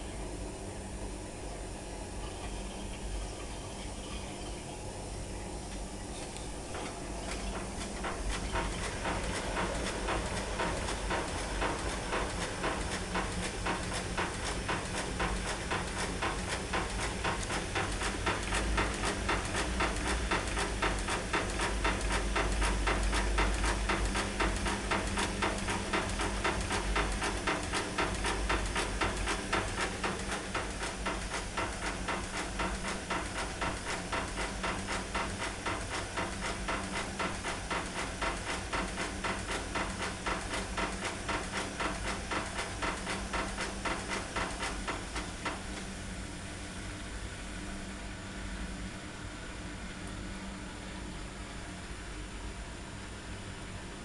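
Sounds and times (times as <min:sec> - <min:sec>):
washing machine motor hum: 0:00.0 - 0:54.0
rattle of turning drum: 0:06.6 - 0:46.2.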